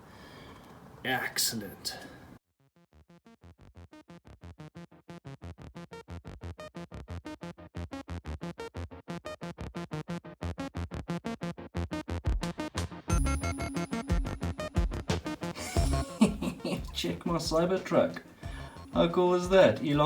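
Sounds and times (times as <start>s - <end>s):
synthesizer repeating short notes: 13.1s - 15.1s.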